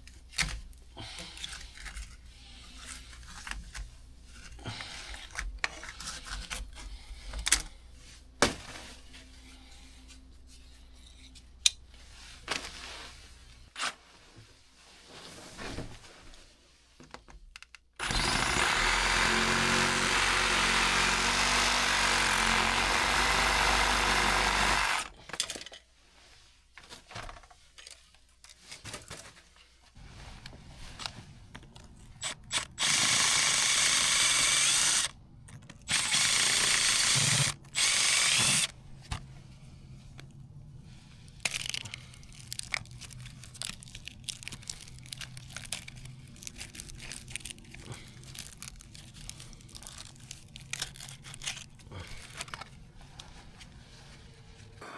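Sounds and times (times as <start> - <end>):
power tool cutting metal pipe: 18.0 - 25.1, 32.2 - 35.1, 35.9 - 38.7.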